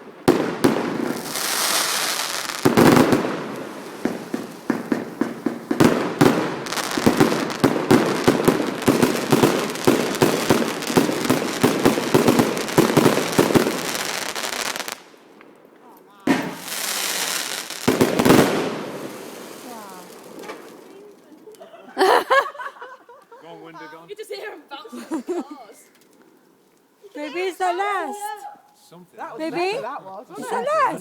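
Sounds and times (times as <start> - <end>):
fireworks hissing burst: 0.0 - 15.0, 16.3 - 21.0
fireworks exploding and crackling: 0.0 - 21.6.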